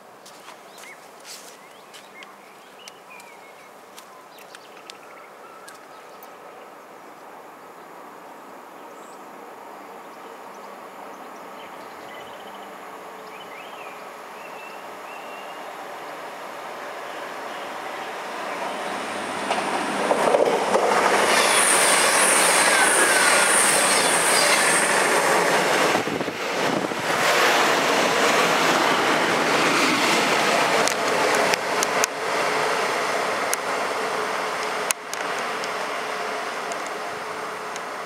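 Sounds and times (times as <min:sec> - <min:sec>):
diesel train rumbling: 0:12.7 - 0:38.0.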